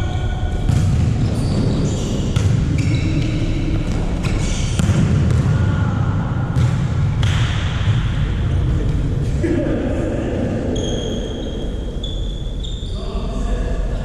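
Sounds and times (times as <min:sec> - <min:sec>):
low rumble of hall noise: 0:00.0 - 0:14.0
volleyball hits: 0:00.6 - 0:05.8, 0:06.4 - 0:09.0
sneaker squeaks on court floor: 0:00.7 - 0:04.6, 0:10.8 - 0:13.0.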